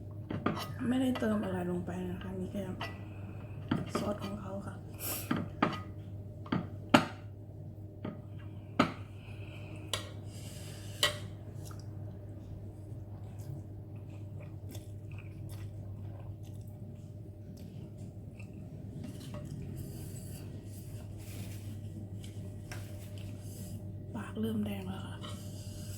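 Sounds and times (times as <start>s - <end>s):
steady low hum: 0.0s - 25.9s
person chewing noodles: 12.7s - 21.1s.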